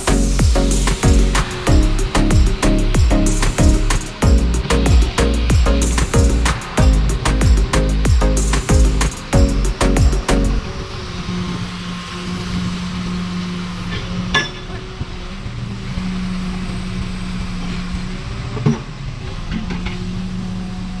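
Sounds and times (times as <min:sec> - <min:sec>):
excavator diesel engine running: 0:00.0 - 0:12.8.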